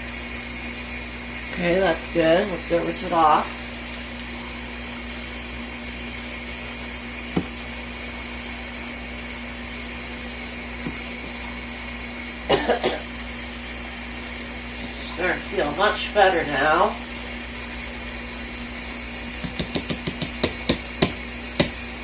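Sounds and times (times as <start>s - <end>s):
tap water running: 0.0s - 22.0s
person coughing: 12.5s - 13.1s.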